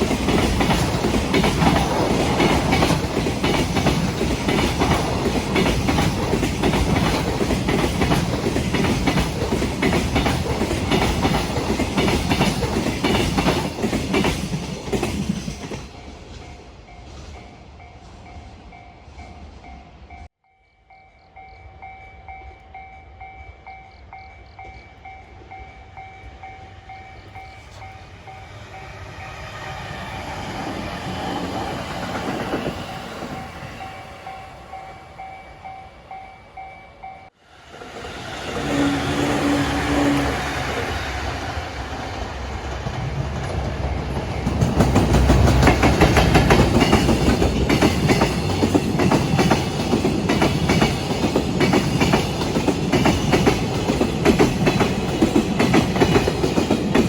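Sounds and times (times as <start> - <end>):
train wheels clattering over rails: 0.0 - 17.4, 27.3 - 34.1, 37.9 - 57.0
train rumble: 0.0 - 20.4, 21.3 - 57.0
crossing warning bell ringing: 15.7 - 37.4
train horn blast: 38.2 - 41.0.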